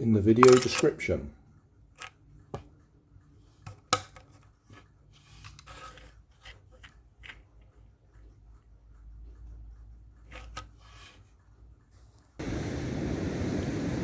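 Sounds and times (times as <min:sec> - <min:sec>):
plastic parts sliding rub: 0:04.4 - 0:07.7, 0:10.2 - 0:12.4.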